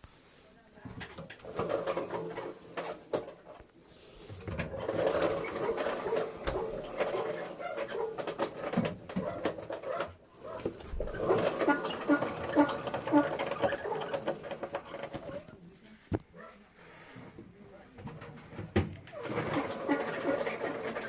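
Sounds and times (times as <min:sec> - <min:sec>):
washing machine knocking and rattling: 0:04.4 - 0:15.5, 0:18.0 - 0:21.0.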